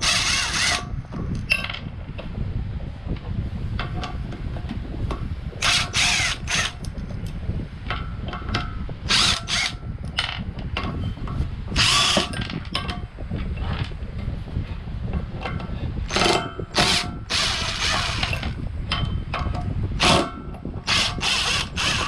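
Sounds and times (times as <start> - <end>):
power drill spinning: 0.0 - 0.9, 5.6 - 6.8, 9.1 - 9.8, 11.8 - 12.4, 16.1 - 18.5, 20.0 - 20.3, 20.9 - 22.0.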